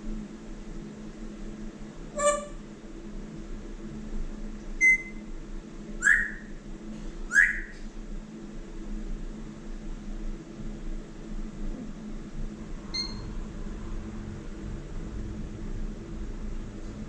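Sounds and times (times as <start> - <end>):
steady low hum: 0.0 - 17.0
parrot whistling: 2.2 - 2.6, 4.8 - 5.2, 6.0 - 6.5, 7.3 - 7.8.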